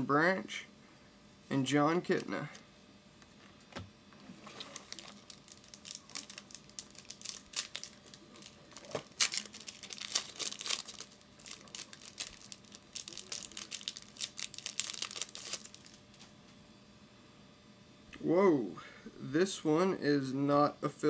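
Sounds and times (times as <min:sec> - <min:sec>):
wrapper tearing and crinkling: 0:04.5 - 0:16.3.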